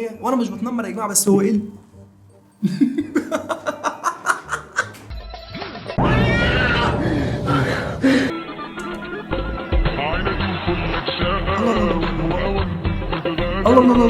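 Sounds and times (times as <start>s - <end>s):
music: 0.0s - 14.0s
laugh-like vocal sounds: 2.6s - 5.1s, 10.2s - 12.4s.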